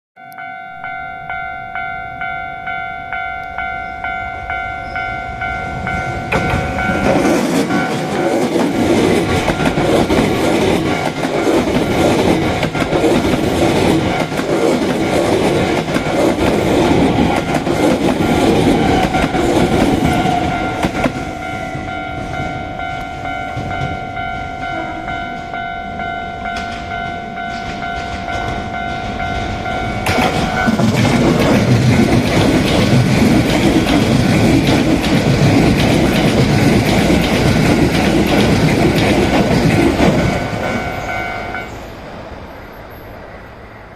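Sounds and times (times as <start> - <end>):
level crossing alarm ringing: 0.2 - 31.3, 38.7 - 41.9
electric train passing: 0.2 - 43.9.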